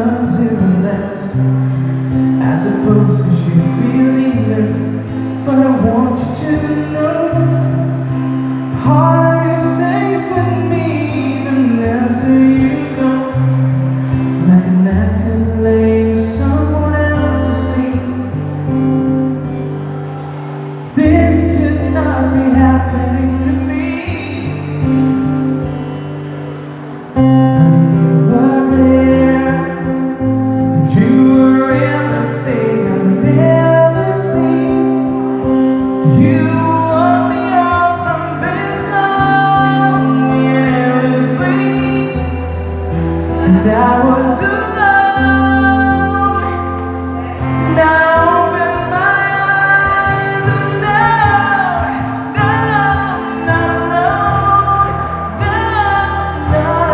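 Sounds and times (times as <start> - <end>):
slow ballad with guitar: 0.0 - 56.9
person singing: 26.6 - 56.9.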